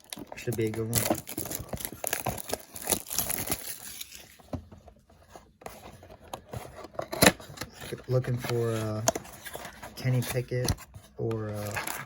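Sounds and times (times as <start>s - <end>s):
plastic packaging tearing and crinkling: 0.0s - 4.4s.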